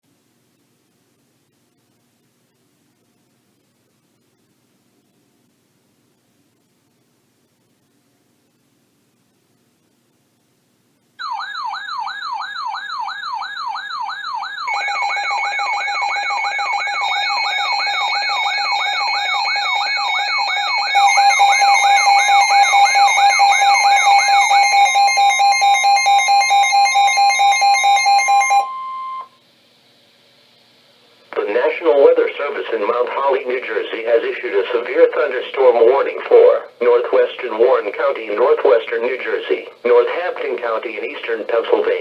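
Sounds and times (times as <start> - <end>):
steady pulsing alarm tones: 11.2 - 29.4
wailing siren tone: 11.2 - 29.4.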